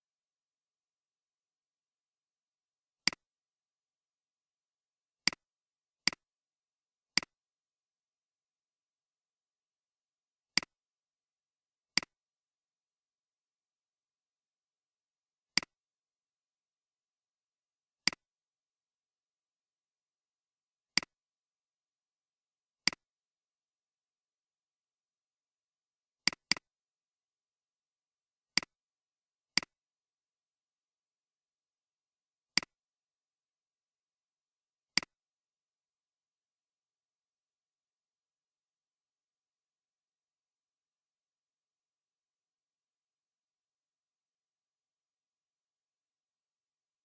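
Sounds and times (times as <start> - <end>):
computer mouse clicks: 26.3 - 26.6.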